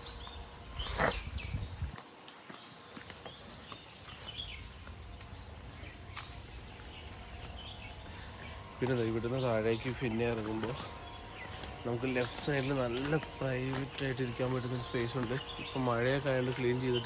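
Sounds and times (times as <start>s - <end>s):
bird chirps: 0.0s - 17.0s.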